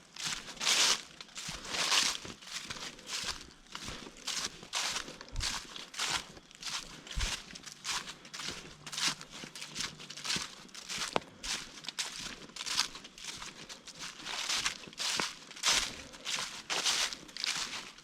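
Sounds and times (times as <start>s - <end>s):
footsteps on dry leaves: 0.0s - 18.0s.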